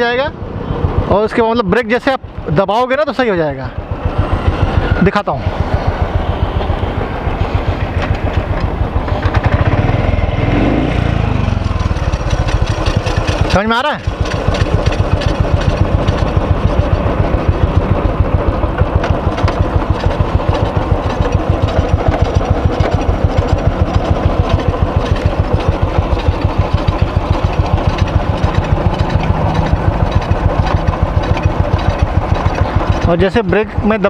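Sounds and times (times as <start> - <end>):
motorcycle engine idling: 0.0 - 34.0
brake pad rubbing and rattling: 5.5 - 10.0, 11.5 - 34.0.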